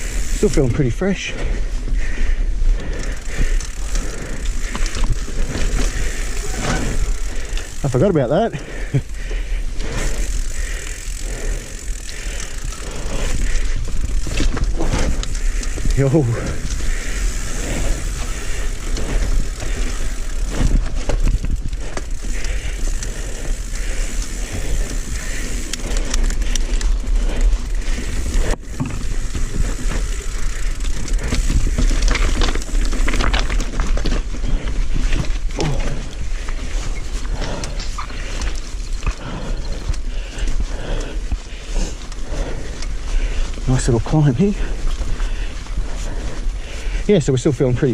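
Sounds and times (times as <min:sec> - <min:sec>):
bike rattling over bumps: 0:00.0 - 0:47.9
tyres on dirt: 0:00.0 - 0:47.9
wind buffeting microphone: 0:09.0 - 0:37.9.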